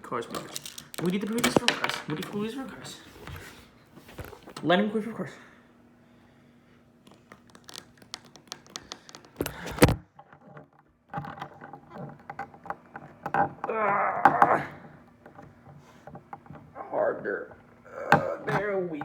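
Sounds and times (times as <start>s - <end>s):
plastic toy pieces clicking: 0.3s - 2.3s, 7.4s - 9.5s.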